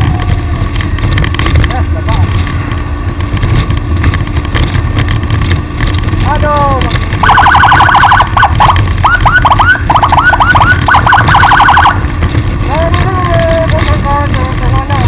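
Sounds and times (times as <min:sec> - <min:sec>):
road and engine noise: 0:00.0 - 0:15.0
electronic siren warbling: 0:07.2 - 0:12.0.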